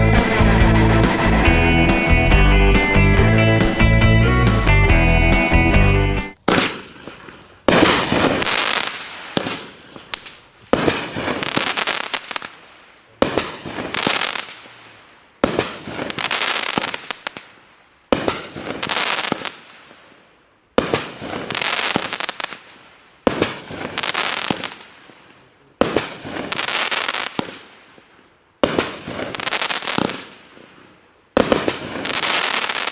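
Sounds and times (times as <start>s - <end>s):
firework bangs: 0.0s - 3.8s, 6.3s - 12.6s, 15.4s - 17.5s, 18.1s - 19.9s, 20.8s - 22.7s, 23.3s - 24.9s, 25.8s - 27.7s, 28.6s - 32.9s
firework crackle: 6.3s - 32.9s.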